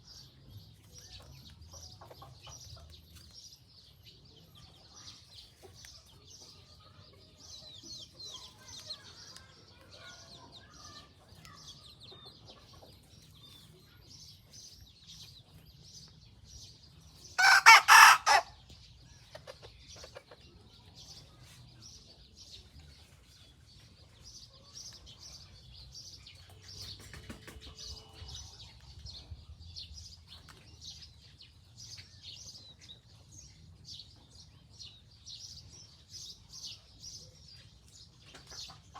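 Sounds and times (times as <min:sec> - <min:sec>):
small birds chirping: 0:00.0 - 0:38.9
young cockerel crowing: 0:17.4 - 0:18.5.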